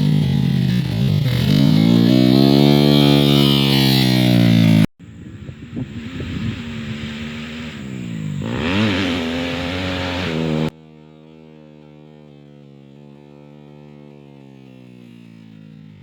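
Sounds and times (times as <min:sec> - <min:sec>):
dirt bike engine revving: 0:00.0 - 0:04.9, 0:05.6 - 0:10.8.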